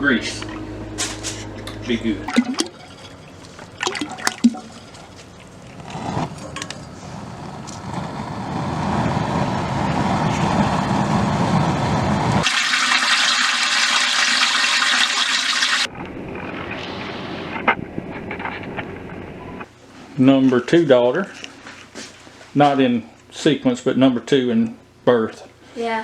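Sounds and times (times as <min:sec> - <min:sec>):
water gushing from tap: 0:02.2 - 0:05.9, 0:12.4 - 0:15.9.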